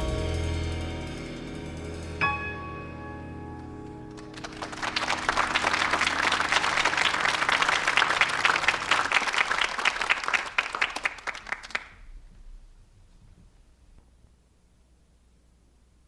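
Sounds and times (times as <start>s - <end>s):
piano trio final notes: 0.0s - 9.0s
audience applauding: 4.0s - 12.0s.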